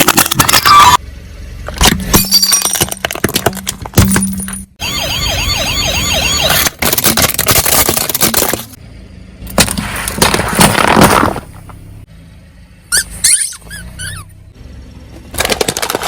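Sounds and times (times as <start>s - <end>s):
tyre crushing crunchy objects: 9.5s - 11.8s, 15.2s - 16.0s
short rising squeaks: 12.9s - 14.4s.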